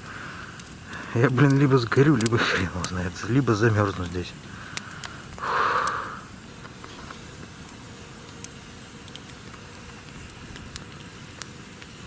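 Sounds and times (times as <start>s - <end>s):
campfire hissing: 0.0s - 12.0s
fire crackling pops: 0.0s - 12.0s.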